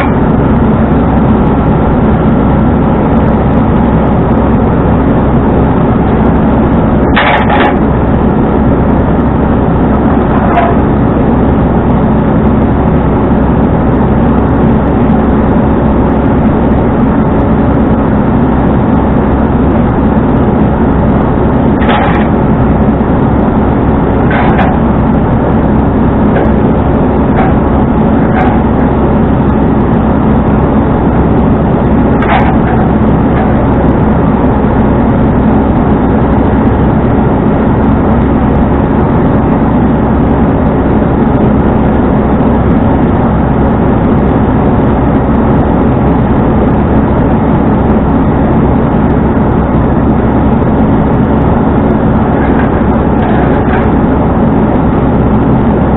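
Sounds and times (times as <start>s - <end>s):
road noise: 0.0s - 55.9s
truck engine drone: 0.0s - 55.9s.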